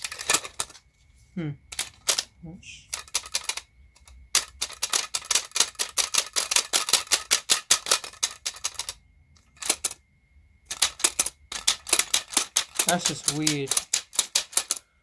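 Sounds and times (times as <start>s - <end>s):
clicking of tools and small parts: 1.7s - 2.3s, 10.7s - 14.9s.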